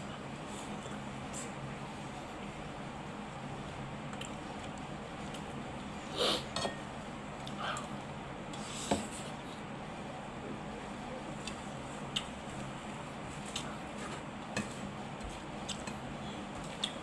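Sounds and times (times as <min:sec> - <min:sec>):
chewing noises: 0:15.6 - 0:16.0, 0:16.6 - 0:17.0.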